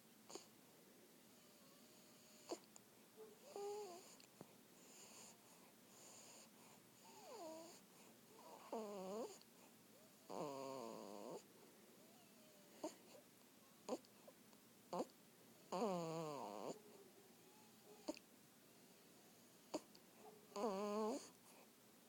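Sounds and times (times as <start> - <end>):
wheezy snoring breaths: 1.3 - 2.7, 3.4 - 11.5, 12.1 - 13.3, 15.7 - 16.8, 18.8 - 21.8.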